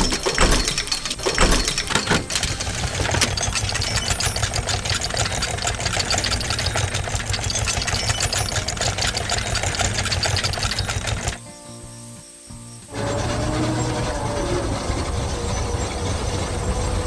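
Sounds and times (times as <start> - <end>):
fast rattling clatter: 0.0 - 11.4
heavy machinery engine running: 0.0 - 11.4, 12.9 - 17.0.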